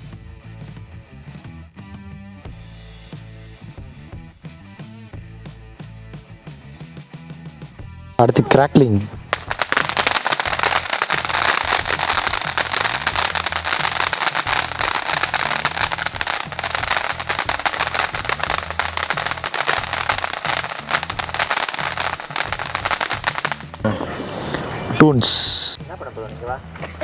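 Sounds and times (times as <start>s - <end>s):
firework crackling: 8.2s - 25.8s.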